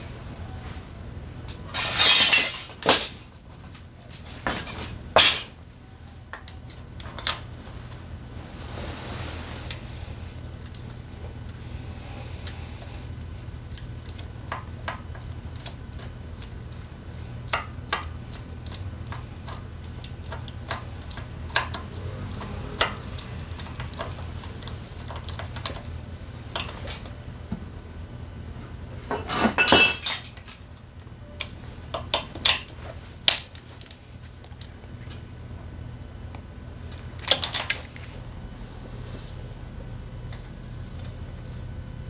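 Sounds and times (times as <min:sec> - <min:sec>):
steady low hum: 0:00.0 - 0:42.0
metal tools clinking: 0:01.5 - 0:03.4, 0:04.1 - 0:05.6, 0:29.1 - 0:30.4, 0:37.2 - 0:37.9.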